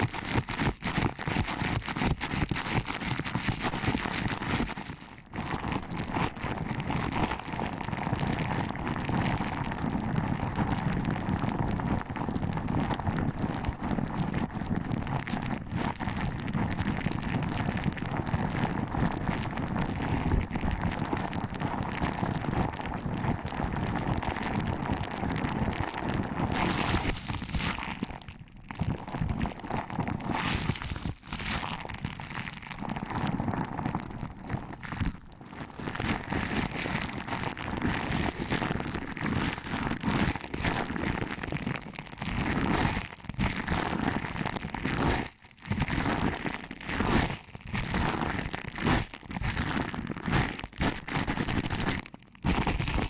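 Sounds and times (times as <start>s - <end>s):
crinkling rustle on microphone: 0.0s - 53.0s.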